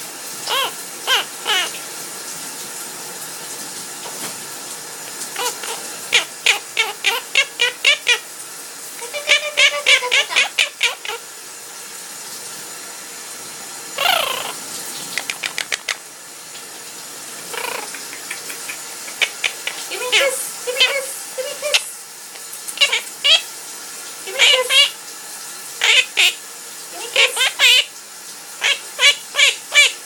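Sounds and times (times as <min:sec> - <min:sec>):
shower running: 0:00.0 - 0:30.0
parrot singing: 0:00.4 - 0:01.8, 0:05.4 - 0:08.2, 0:09.0 - 0:11.2, 0:14.0 - 0:14.6, 0:17.5 - 0:21.9, 0:22.7 - 0:23.5, 0:24.3 - 0:25.0, 0:25.8 - 0:27.9, 0:28.6 - 0:30.0.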